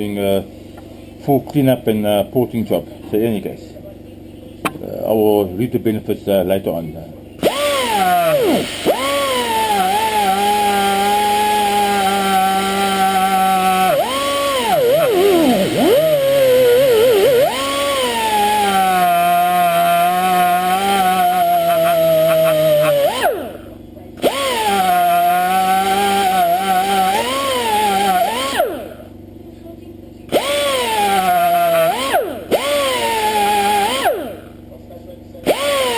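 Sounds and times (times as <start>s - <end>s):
air tool wire brush whine: 7.4s - 29.1s, 30.3s - 34.6s, 35.4s - 35.9s.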